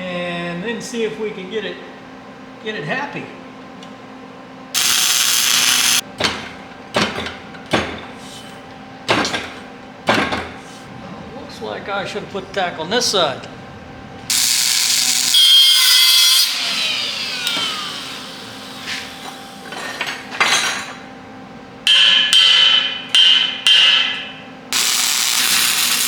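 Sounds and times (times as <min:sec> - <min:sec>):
welding arc crackling: 0:04.8 - 0:06.0, 0:14.3 - 0:16.4, 0:24.7 - 0:26.0.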